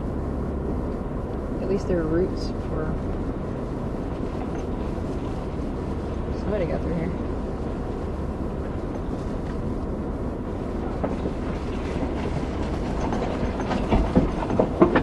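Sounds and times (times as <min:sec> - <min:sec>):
vehicle low rumble: 0:00.0 - 0:15.0
clicks and knocks: 0:11.0 - 0:15.0.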